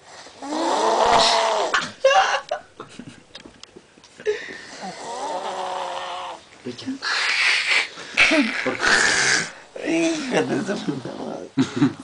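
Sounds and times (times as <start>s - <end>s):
man snoring: 0.4s - 1.7s, 4.8s - 6.4s.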